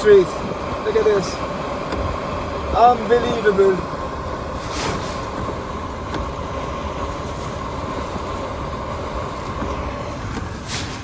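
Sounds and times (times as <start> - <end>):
car engine idling: 0.0 - 11.0
faint steady hum: 0.0 - 11.0
brief swish: 4.6 - 5.2, 10.6 - 11.0.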